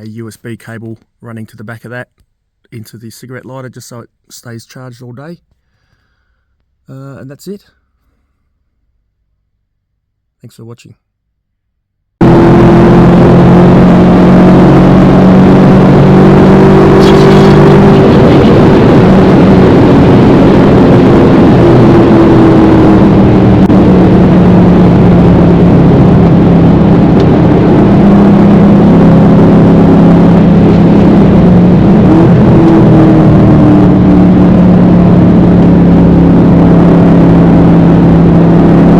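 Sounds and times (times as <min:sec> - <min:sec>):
car engine under load: 0:12.2 - 0:38.9
road and wind noise: 0:12.2 - 0:38.9.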